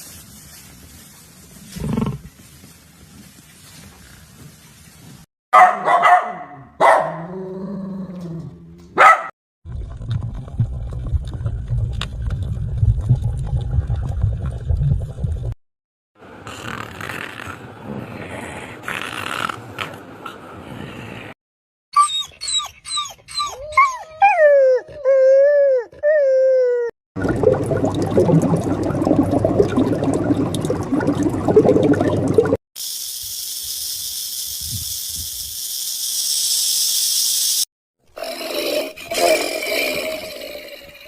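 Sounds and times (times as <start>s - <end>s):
steady high hiss: 32.8s - 37.6s.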